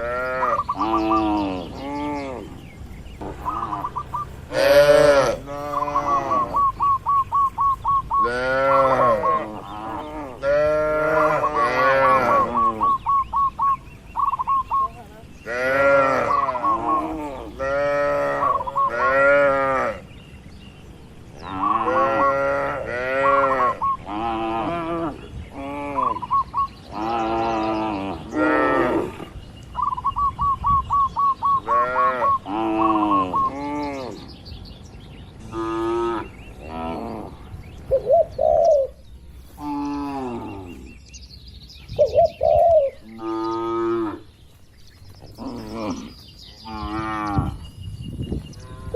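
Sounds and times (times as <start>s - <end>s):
bird chirping: 0.0s - 22.6s, 23.6s - 24.4s, 25.0s - 48.9s
cattle mooing: 4.5s - 6.8s, 8.2s - 13.0s, 15.5s - 20.0s, 21.5s - 26.2s.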